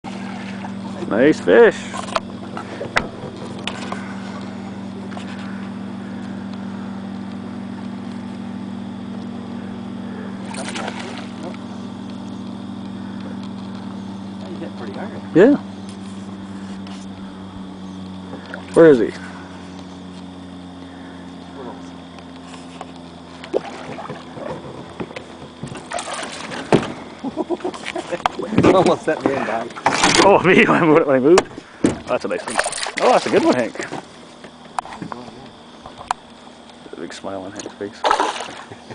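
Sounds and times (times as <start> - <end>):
water splashing: 0.0 - 5.4, 10.4 - 11.8, 23.3 - 30.3, 32.0 - 34.1, 38.0 - 38.9
boat motor humming: 0.0 - 38.9
knocks against boat: 2.0 - 4.0, 23.5 - 27.0, 28.2 - 30.3, 31.3 - 32.1.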